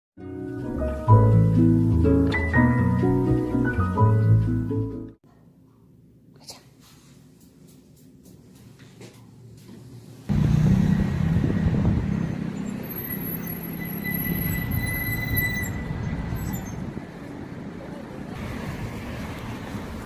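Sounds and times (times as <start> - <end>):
road traffic rumble: 10.2 - 20.0
faint high squeal: 12.1 - 16.8.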